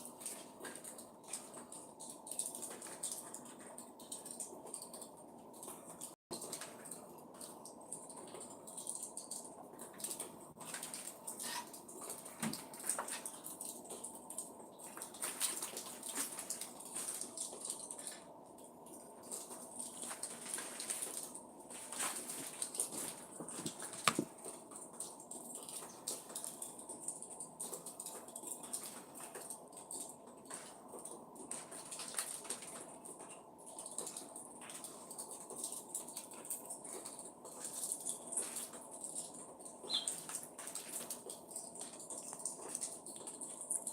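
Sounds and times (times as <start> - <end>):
small clicks and rustles: 0.0 - 43.9
birds chirping: 39.7 - 40.3.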